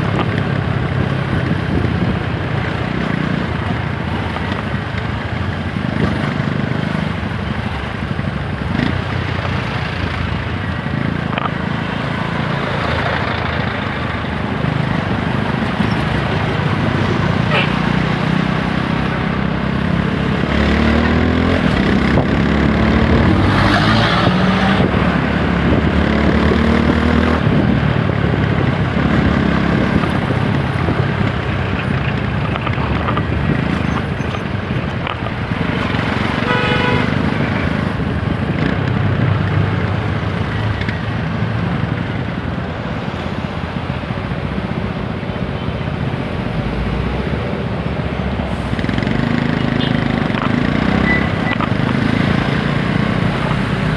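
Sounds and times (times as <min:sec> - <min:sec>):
wind rushing past microphone: 0:21.1 - 0:33.9
vehicle horn toot: 0:36.4 - 0:37.2.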